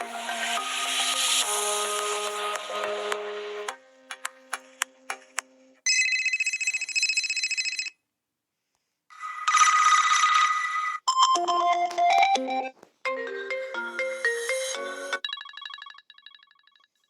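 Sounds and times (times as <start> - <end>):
trilling phone ring: 5.9 - 8.0
ringtone melodies of stepped notes: 11.1 - 17.0.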